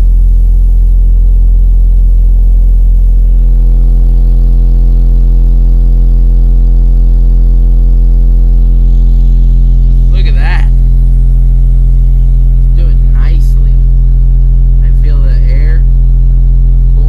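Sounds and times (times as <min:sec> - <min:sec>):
subwoofer deep buzzy hum: 0:00.0 - 0:17.0.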